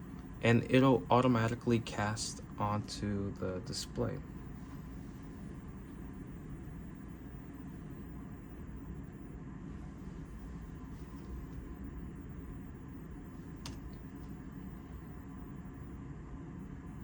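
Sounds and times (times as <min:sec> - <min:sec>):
ventilation hum: 0:00.0 - 0:17.0
sharp click: 0:13.6 - 0:14.0.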